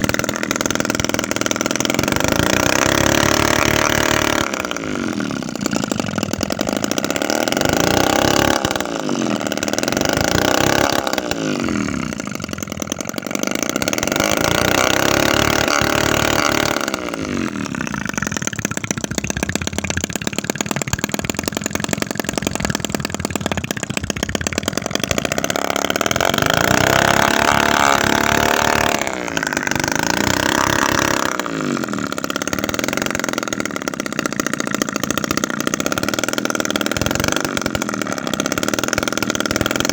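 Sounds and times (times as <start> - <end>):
tiny two-stroke engine revving: 0.0 - 39.9.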